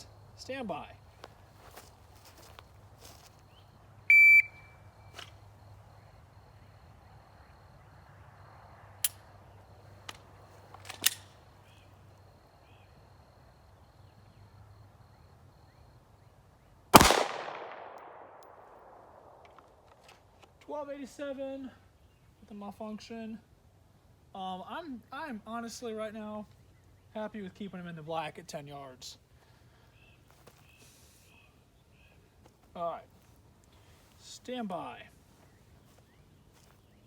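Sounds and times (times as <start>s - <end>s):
shot timer beep: 4.1s - 4.7s
pistol clicks: 10.9s - 11.4s, 17.0s - 19.7s
pistol shot: 16.9s - 19.4s.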